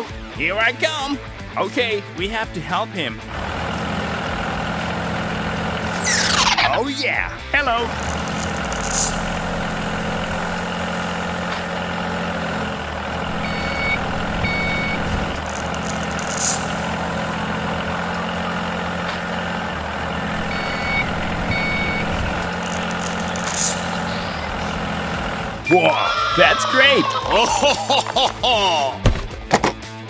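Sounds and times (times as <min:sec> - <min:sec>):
heavy vehicle engine running: 0:02.7 - 0:25.9
brief hisses: 0:08.0 - 0:10.0
reversing alarm beeps: 0:13.3 - 0:16.1, 0:20.2 - 0:24.6, 0:25.6 - 0:26.5.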